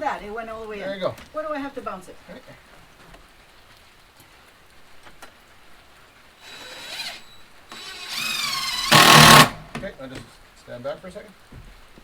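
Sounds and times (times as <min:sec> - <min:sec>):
power drill motor whining: 0:06.4 - 0:09.8.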